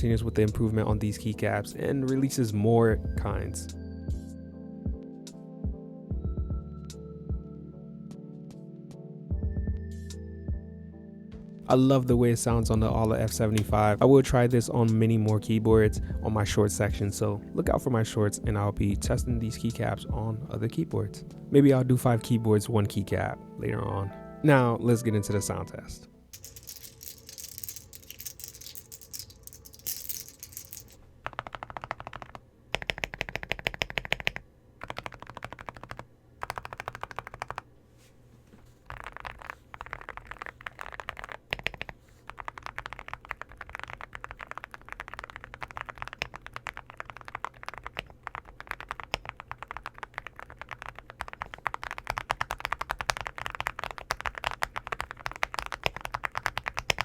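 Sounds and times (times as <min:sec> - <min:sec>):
mechanical keyboard typing: 0:26.4 - 0:37.6, 0:38.9 - 0:57.0.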